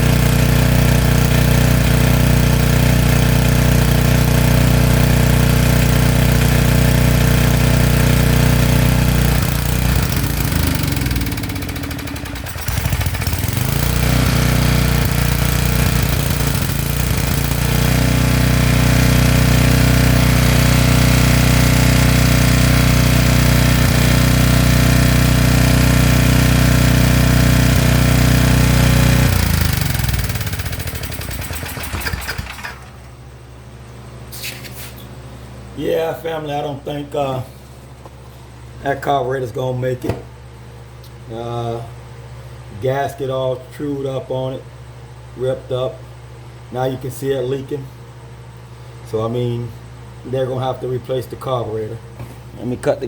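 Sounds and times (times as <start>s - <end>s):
small gasoline engine running: 0.0s - 33.1s.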